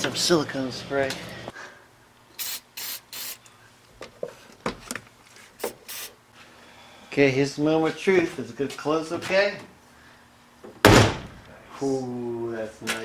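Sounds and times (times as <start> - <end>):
aerosol spray hissing: 2.4 - 3.4, 5.6 - 6.2.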